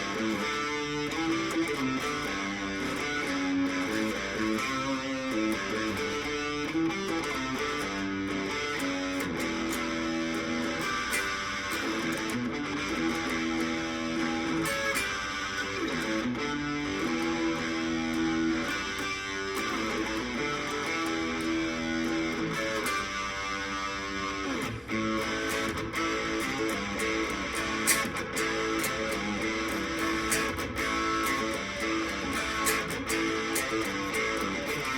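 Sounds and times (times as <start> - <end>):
overdriven electric guitar riffs: 0.0 - 34.9.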